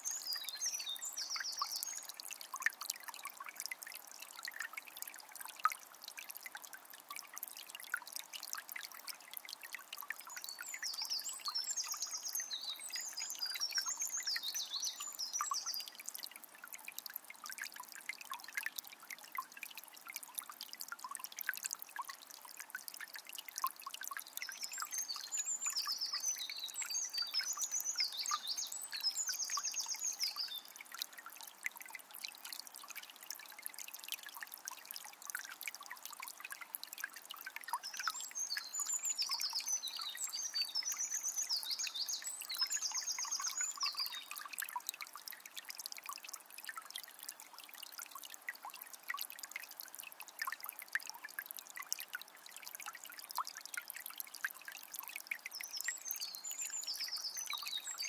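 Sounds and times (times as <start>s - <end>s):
songbird chirping: 0.0s - 2.2s, 10.2s - 16.0s, 24.2s - 30.8s, 37.7s - 44.6s, 55.6s - 58.0s
river flowing and trickling: 0.0s - 58.0s.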